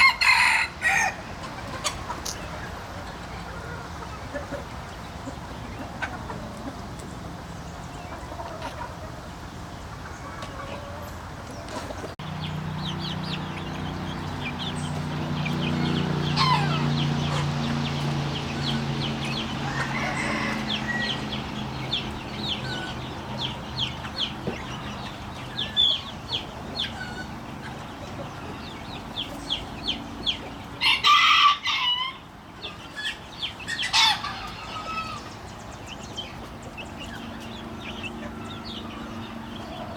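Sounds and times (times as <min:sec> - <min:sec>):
rooster crowing: 0:00.0 - 0:01.3, 0:15.7 - 0:17.1, 0:18.6 - 0:23.0, 0:30.8 - 0:32.3
chickens clucking: 0:00.0 - 0:39.9.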